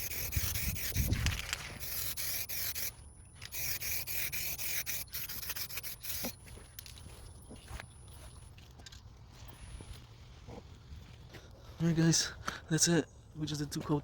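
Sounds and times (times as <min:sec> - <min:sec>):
aerosol can spraying: 0:00.0 - 0:06.4
wind rumble on microphone: 0:00.2 - 0:01.6.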